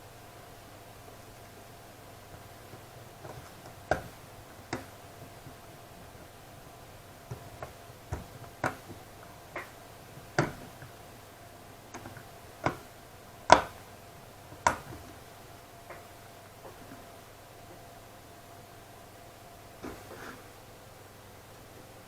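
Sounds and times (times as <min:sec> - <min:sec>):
sharp clicks and taps: 0:07.3 - 0:11.0, 0:13.5 - 0:13.8, 0:14.5 - 0:15.2.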